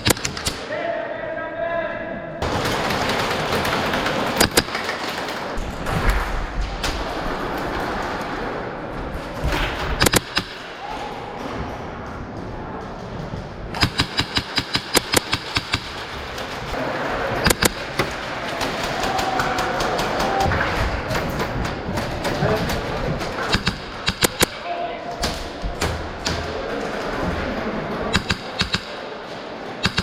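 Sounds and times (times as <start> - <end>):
airsoft guns firing: 0.0 - 0.7, 2.4 - 5.3, 10.0 - 10.8, 13.7 - 16.8, 17.4 - 20.4, 23.2 - 24.6, 28.1 - 29.1
arena background noise: 0.0 - 30.0.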